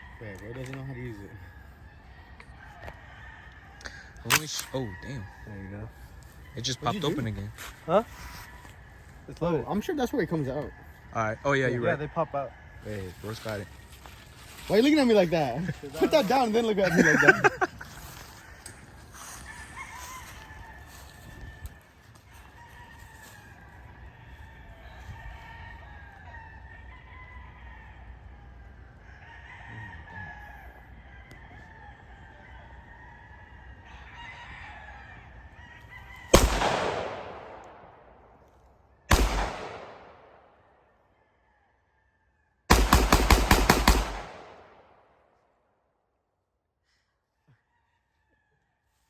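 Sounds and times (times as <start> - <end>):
loud gunshots: 36.3 - 37.9, 39.1 - 40.4, 42.7 - 44.8.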